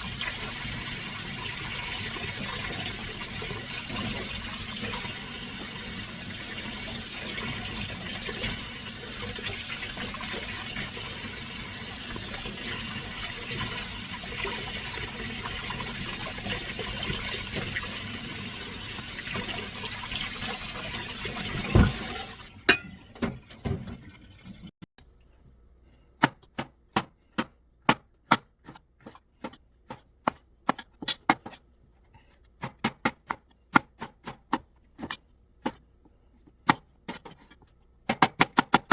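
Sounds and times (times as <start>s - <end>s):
tap water running: 0.0s - 24.8s.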